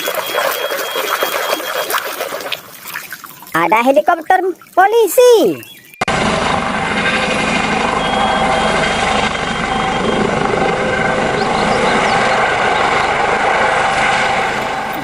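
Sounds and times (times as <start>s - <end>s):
helicopter rotor and engine: 5.6s - 15.0s.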